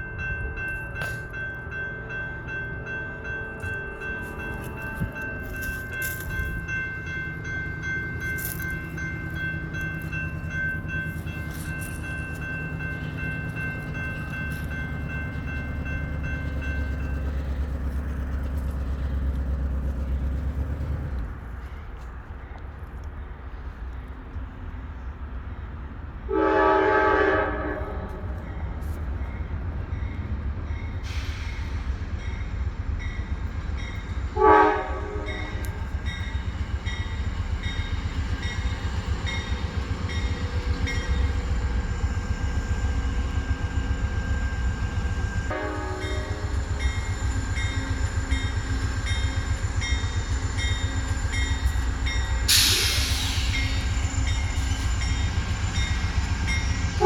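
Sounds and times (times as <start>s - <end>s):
low rumble of train: 0.0s - 57.0s
train air horn: 26.3s - 28.4s, 34.4s - 35.7s, 45.5s - 46.6s.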